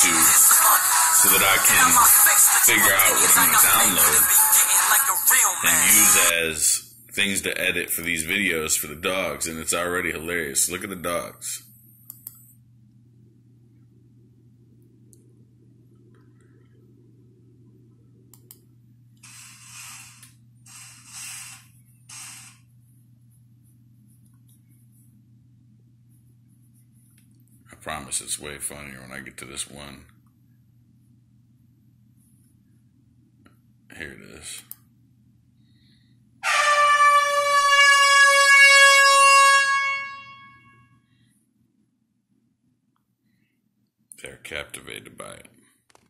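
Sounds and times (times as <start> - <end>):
hissing bursts: 19.2 - 22.6
air horn blast: 36.4 - 40.8.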